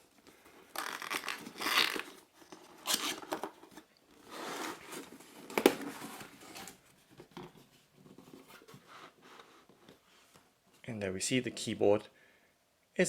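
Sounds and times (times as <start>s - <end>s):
cardboard box rustling: 2.5s - 10.0s.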